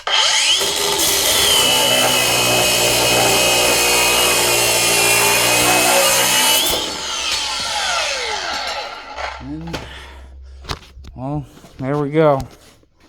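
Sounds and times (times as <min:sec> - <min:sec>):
angle grinder cutting steel: 0:00.0 - 0:09.5.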